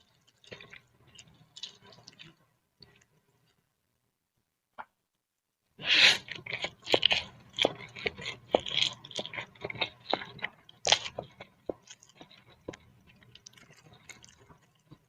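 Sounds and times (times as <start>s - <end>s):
wet chewing with mouth clicks: 0.0s - 3.6s, 5.8s - 15.0s
loud slurp: 5.8s - 6.3s.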